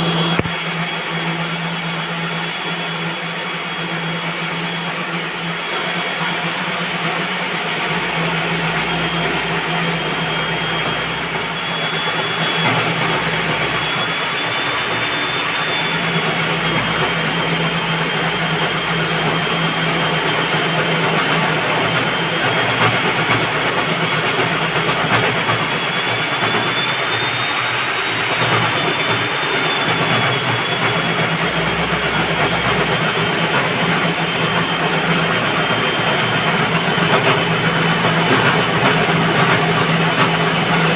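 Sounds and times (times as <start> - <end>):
core drill grinding concrete: 0.0 - 40.9.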